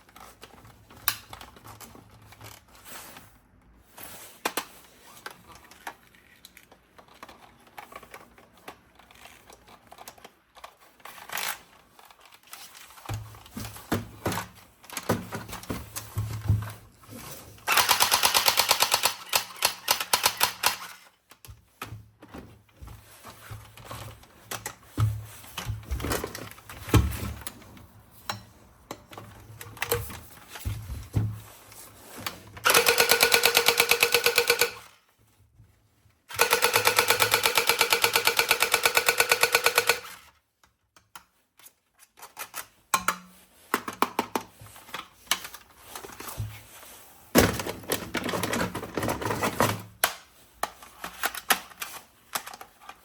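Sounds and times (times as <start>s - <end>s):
toy gun rapid-fire clicks: 17.7s - 21.1s, 32.6s - 34.9s, 36.3s - 40.2s.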